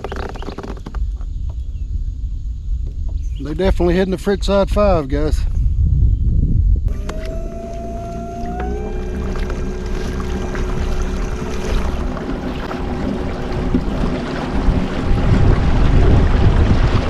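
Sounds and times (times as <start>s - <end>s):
faint steady hum: 6.8s - 16.0s
water and wind rushing: 6.9s - 17.0s.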